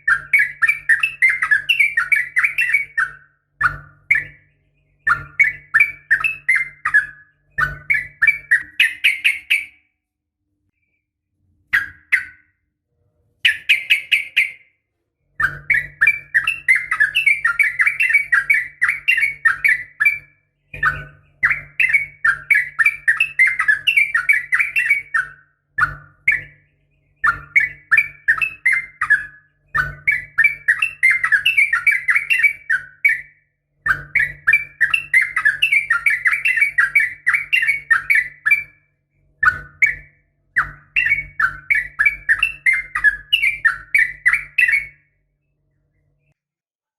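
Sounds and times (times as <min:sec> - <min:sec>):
bulbul singing: 0:00.0 - 0:10.1, 0:11.7 - 0:12.7, 0:13.4 - 0:45.3.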